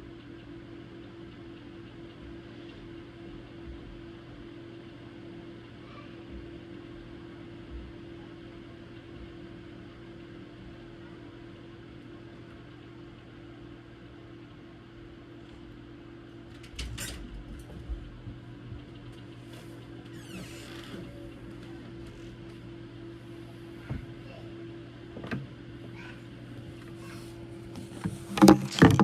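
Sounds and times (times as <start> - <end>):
sharp clicks or knocks: 28.0 - 29.0.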